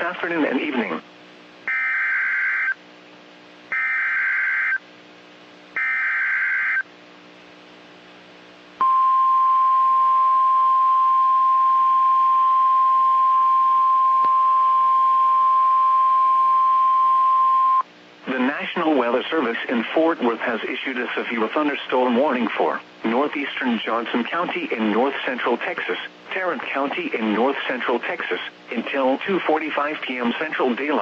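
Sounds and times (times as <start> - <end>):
steady attention tone: 8.8 - 17.8.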